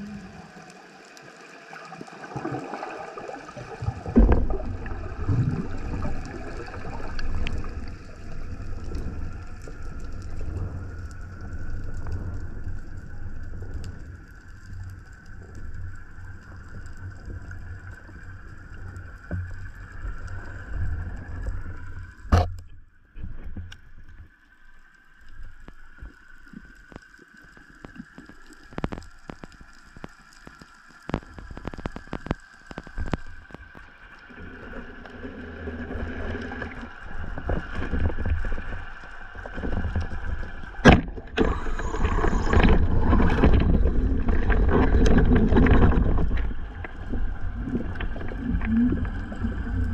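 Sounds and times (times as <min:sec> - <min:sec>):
water noise: 0:00.0 - 0:49.9
sharp underwater clicks: 0:25.3 - 0:33.9
underwater motorboat engine whine: 0:34.4 - 0:49.9.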